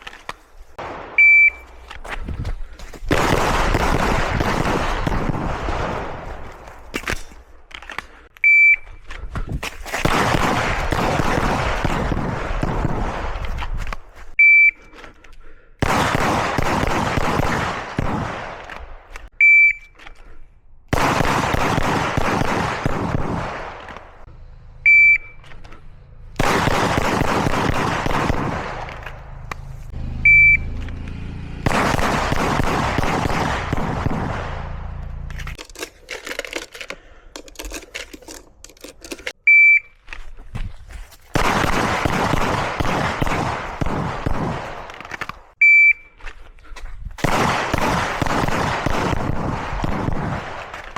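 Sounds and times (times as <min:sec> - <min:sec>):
shot timer beeping: 0:01.2 - 0:01.7, 0:08.4 - 0:09.0, 0:14.4 - 0:14.8, 0:19.4 - 0:20.0, 0:24.8 - 0:25.4, 0:30.2 - 0:30.8, 0:39.5 - 0:40.0, 0:45.6 - 0:46.2
rapid pistol shots: 0:03.1 - 0:06.2, 0:10.0 - 0:13.4, 0:15.8 - 0:18.7, 0:20.9 - 0:24.1, 0:26.4 - 0:29.0, 0:31.6 - 0:34.7, 0:41.4 - 0:45.0, 0:47.2 - 0:50.9.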